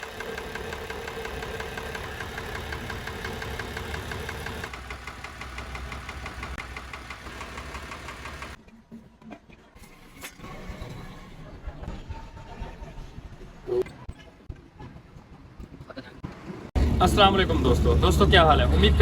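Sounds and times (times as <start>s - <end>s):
diesel engine idling with knock: 0.0s - 8.6s, 16.8s - 19.0s.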